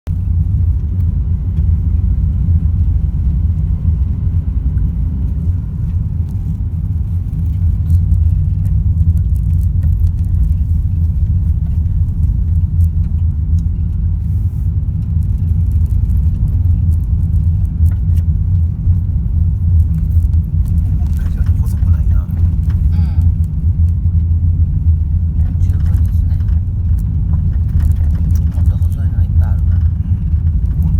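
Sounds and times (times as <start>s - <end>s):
car engine and road noise: 0.0s - 30.9s.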